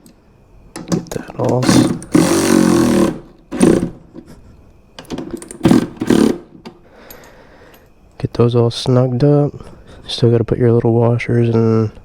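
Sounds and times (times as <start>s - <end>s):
power drill running in bursts: 1.6s - 4.0s, 5.6s - 6.4s.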